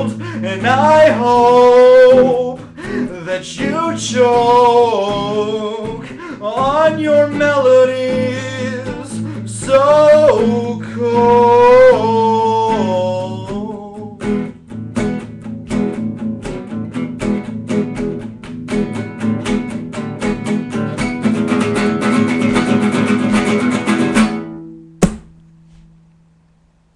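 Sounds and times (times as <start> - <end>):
person singing: 0.0 - 14.2
acoustic guitar strumming: 0.0 - 25.8.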